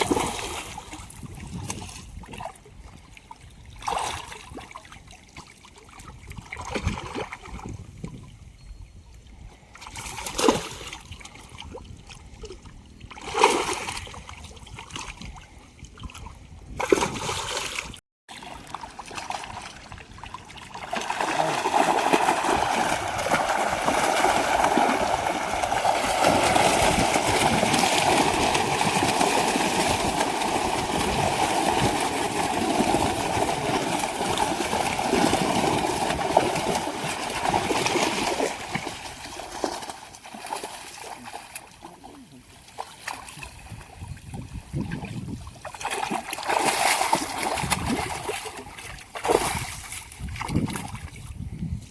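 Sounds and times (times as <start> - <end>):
water splashing: 0.0 - 2.5, 16.1 - 51.2
rush of moving water: 18.4 - 43.4.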